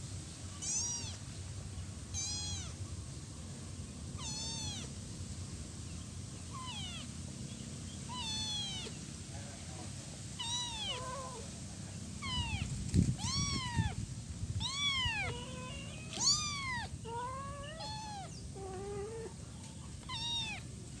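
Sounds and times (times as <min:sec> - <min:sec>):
kitten meowing: 0:00.6 - 0:01.2, 0:02.1 - 0:02.8, 0:04.2 - 0:04.9, 0:06.5 - 0:07.1, 0:08.1 - 0:09.0, 0:10.4 - 0:11.5, 0:12.2 - 0:14.0, 0:14.6 - 0:19.4, 0:20.0 - 0:20.7.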